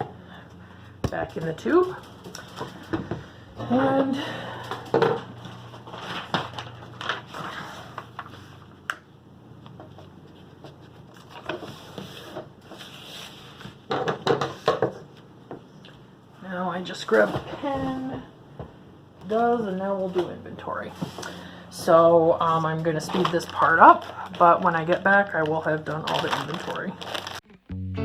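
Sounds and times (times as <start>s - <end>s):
canvas crinkling and rustling: 22.5s - 27.4s.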